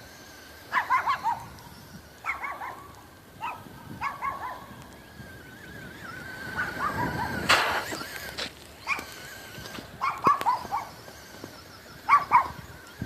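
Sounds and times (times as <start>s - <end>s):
electric motor whine: 0.0s - 13.0s
dog yipping and barking: 0.7s - 1.6s, 2.2s - 4.8s, 6.5s - 8.0s, 8.8s - 9.2s, 10.0s - 11.0s, 12.0s - 12.8s
loud noisy burst: 7.4s - 8.1s.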